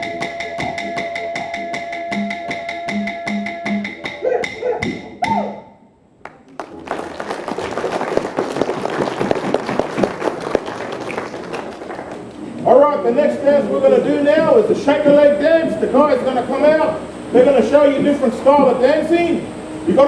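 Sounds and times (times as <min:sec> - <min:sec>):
didgeridoo drone: 0:00.0 - 0:10.6
person shouting: 0:04.2 - 0:05.6
audience clapping and cheering: 0:06.2 - 0:12.5.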